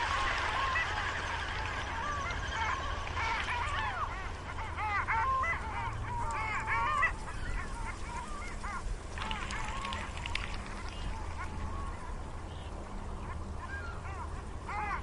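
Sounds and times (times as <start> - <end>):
ducks quacking: 0.0 - 11.9.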